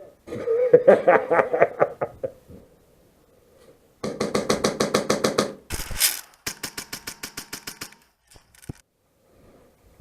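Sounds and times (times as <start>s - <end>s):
airsoft rifle full-auto bursts: 5.0s - 8.2s
short hiss: 5.7s - 6.5s.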